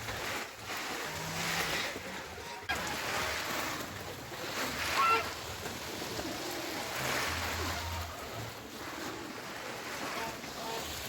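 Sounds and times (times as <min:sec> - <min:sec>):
water splashing and running: 0:00.0 - 0:11.0
waterfowl call: 0:04.6 - 0:08.5.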